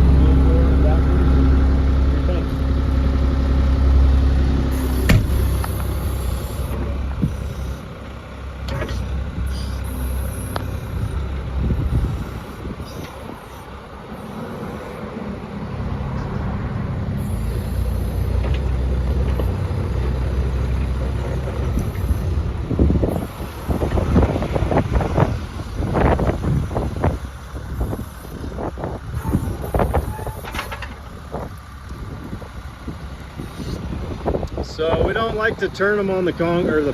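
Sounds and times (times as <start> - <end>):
diesel engine running: 0.0 - 36.9.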